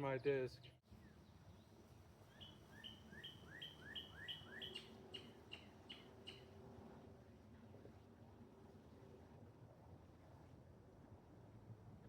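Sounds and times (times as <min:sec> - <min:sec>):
songbird singing faintly: 0:02.3 - 0:06.4.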